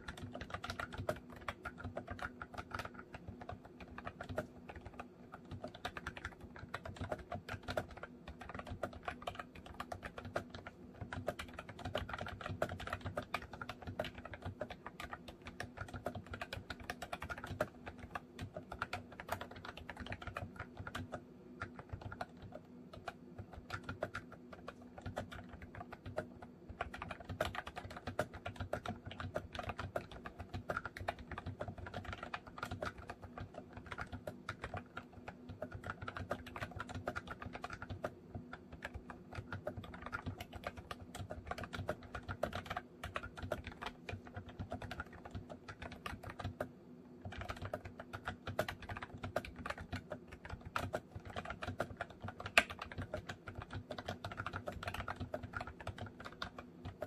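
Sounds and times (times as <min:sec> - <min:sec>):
keyboard keys clicking: 0:00.0 - 0:57.0.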